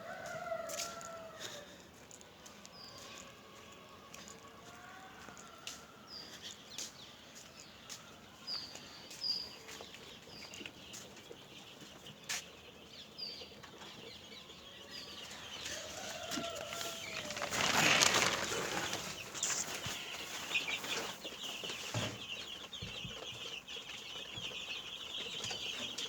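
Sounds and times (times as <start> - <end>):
chicks peeping: 0.0 - 26.0.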